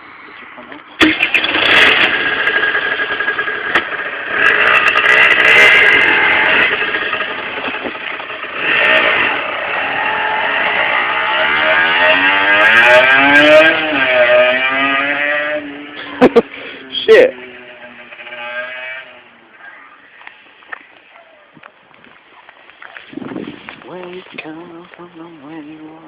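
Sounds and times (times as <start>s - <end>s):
two-stroke motorcycle engine revving: 1.0s - 20.4s.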